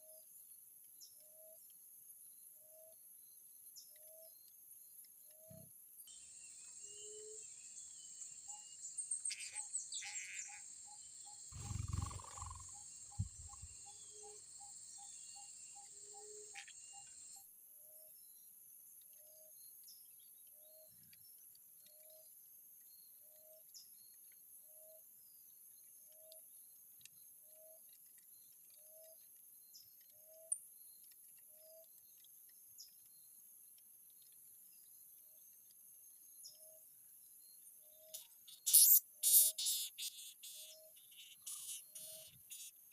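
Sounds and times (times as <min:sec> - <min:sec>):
insect chorus buzzing: 0:06.1 - 0:17.4
high bird chirps: 0:11.5 - 0:14.4.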